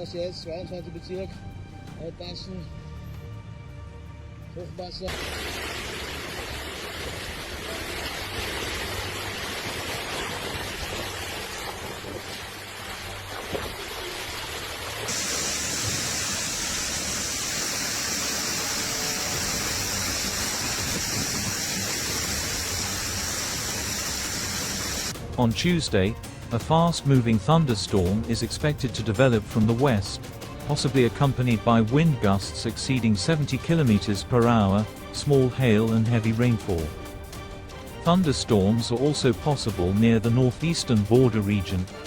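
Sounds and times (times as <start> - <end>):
running water: 5.1 - 25.2
storm rain rushing: 15.1 - 25.5.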